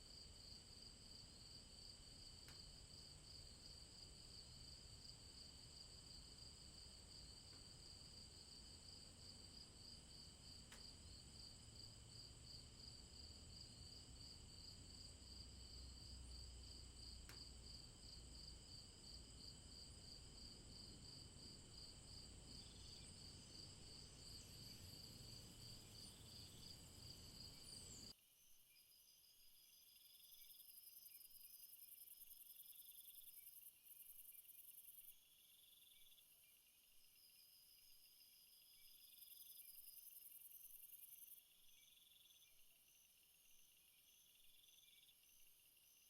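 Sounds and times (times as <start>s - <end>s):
insect chorus buzzing: 1.2s - 28.1s.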